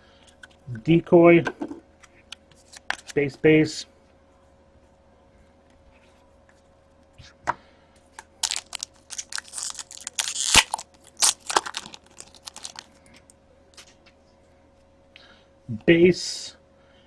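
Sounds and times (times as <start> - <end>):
wrapper tearing and crinkling: 8.4 - 12.9.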